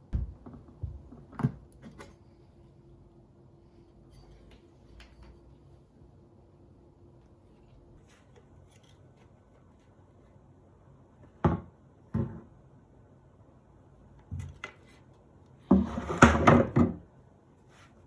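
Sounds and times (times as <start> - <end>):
hard objects knocking: 0.1 - 1.6.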